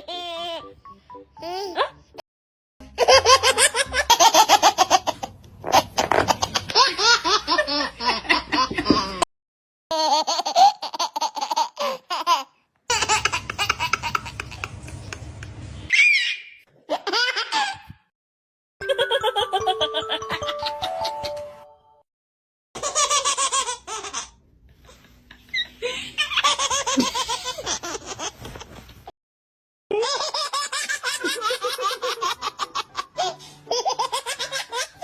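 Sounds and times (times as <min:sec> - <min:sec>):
babies giggling and laughing: 0:02.9 - 0:09.2, 0:09.9 - 0:15.6, 0:18.8 - 0:21.6, 0:22.8 - 0:28.8, 0:29.9 - 0:35.0
baby squealing: 0:15.9 - 0:16.6.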